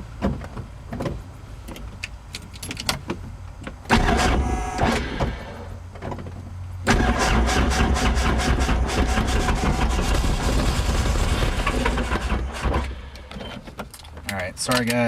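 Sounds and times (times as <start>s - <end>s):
electric starter cranking engine: 3.9s - 5.6s, 6.8s - 13.2s.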